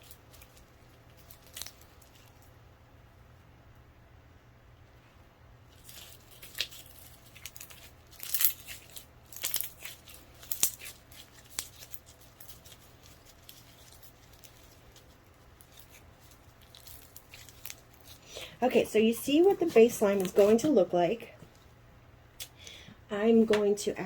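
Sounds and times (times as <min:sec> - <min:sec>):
slime crackling and tearing: 0:00.0 - 0:02.4, 0:05.8 - 0:18.2.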